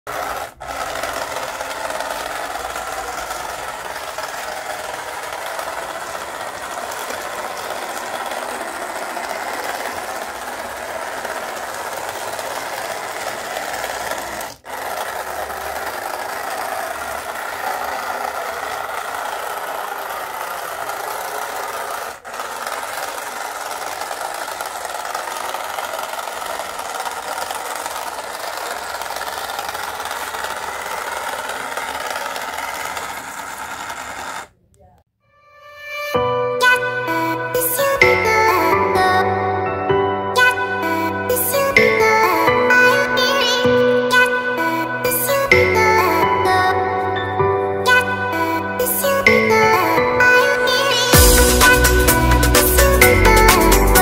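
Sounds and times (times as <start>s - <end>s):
toy gear motors whirring and rattling: 0.0s - 34.6s, 50.9s - 54.0s.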